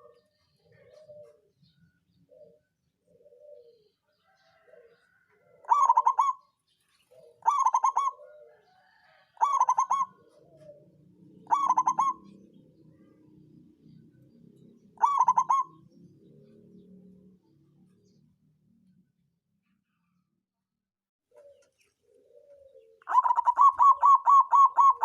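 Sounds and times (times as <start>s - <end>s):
faint low coos: 0.0s - 6.4s, 7.1s - 19.1s, 21.3s - 25.0s
dove cooing: 0.0s - 13.3s, 14.2s - 16.9s, 21.3s - 25.0s.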